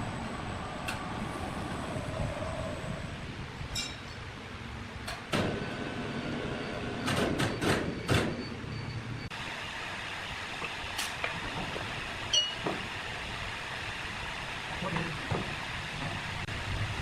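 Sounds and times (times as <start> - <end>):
sharp knocks and clanks: 12.4 - 12.9, 14.8 - 15.6.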